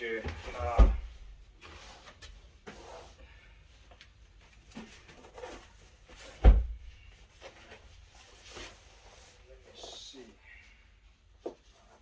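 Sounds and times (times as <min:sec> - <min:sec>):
heavy thump: 0:00.3 - 0:01.3, 0:06.4 - 0:07.0.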